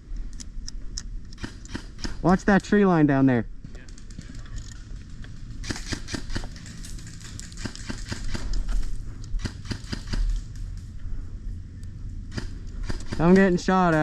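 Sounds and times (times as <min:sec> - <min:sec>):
airsoft gunfire snaps: 0:09.4 - 0:10.4, 0:12.3 - 0:14.0.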